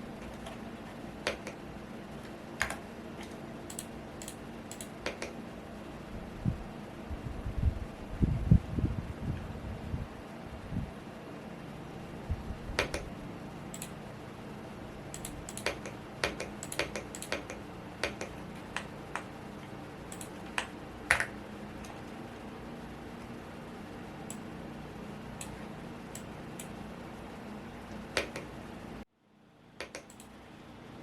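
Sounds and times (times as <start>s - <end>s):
fan humming: 0.0s - 31.0s
mechanical keyboard typing: 3.7s - 5.4s, 13.8s - 14.0s, 15.1s - 19.3s, 20.1s - 21.3s.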